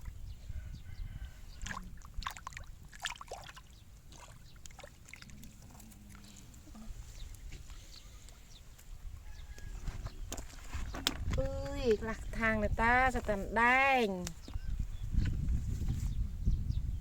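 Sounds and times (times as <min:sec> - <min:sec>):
shallow water splashing: 0:01.6 - 0:08.0.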